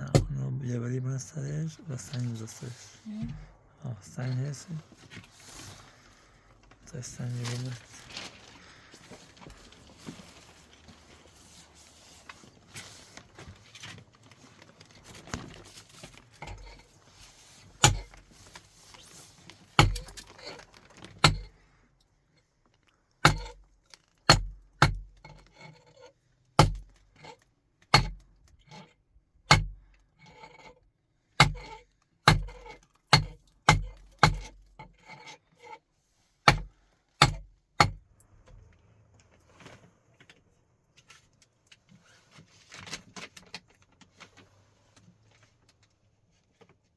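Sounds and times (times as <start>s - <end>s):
faint rustling: 1.5s - 23.1s
stone hammer striking: 17.8s - 18.1s, 32.3s - 34.5s.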